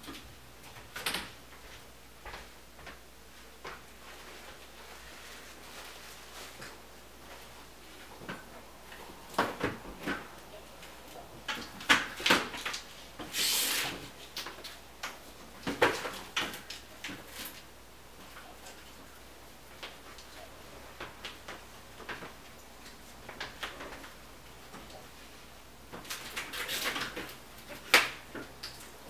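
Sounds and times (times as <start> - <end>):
short scraping hiss: 13.3 - 14.0
clatter of objects handled: 25.9 - 29.0.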